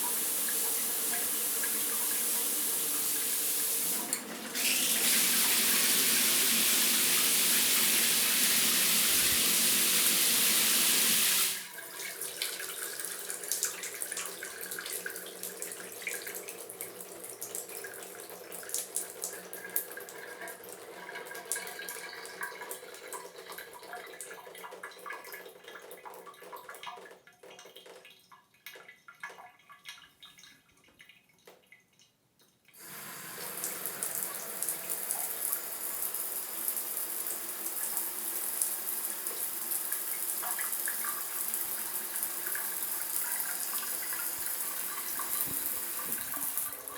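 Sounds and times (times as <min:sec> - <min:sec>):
shower spray: 0:00.0 - 0:11.7, 0:44.2 - 0:46.8
water dripping: 0:11.3 - 0:46.9
water splashing and trickling: 0:41.8 - 0:46.9.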